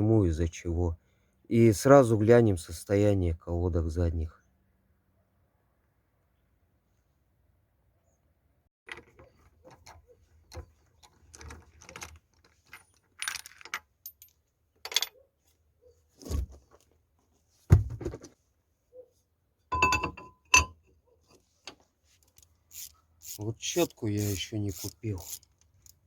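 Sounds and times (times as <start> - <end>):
metal tools clinking and clanking: 8.9 - 15.2, 19.7 - 20.8.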